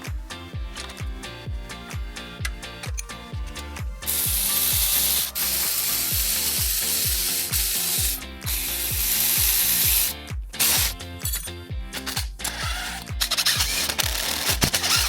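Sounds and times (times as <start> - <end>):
background music with steady beat: 0.0 - 15.0
air ratchet running: 4.1 - 15.0.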